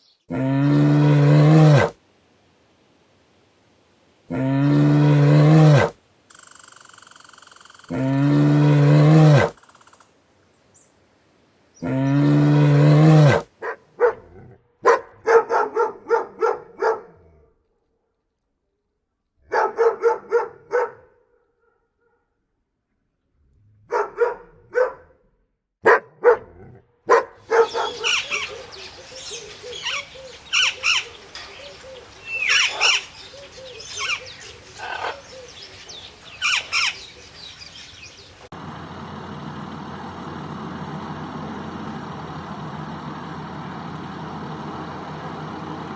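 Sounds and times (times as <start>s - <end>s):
repeated animal calls: 0.3s - 2.0s, 4.3s - 10.2s, 11.8s - 14.2s, 27.4s - 43.5s
birds chirping: 4.6s - 11.1s, 27.1s - 45.9s.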